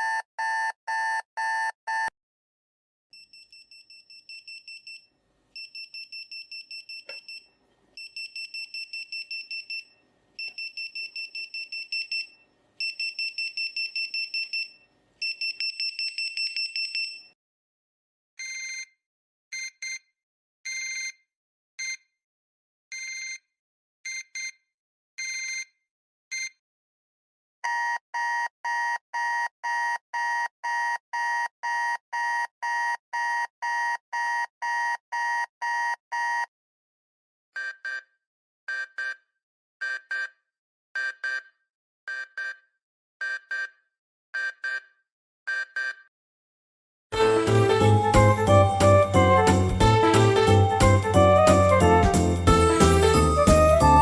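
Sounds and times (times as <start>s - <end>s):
alarm clock beeping: 8.0s - 17.3s.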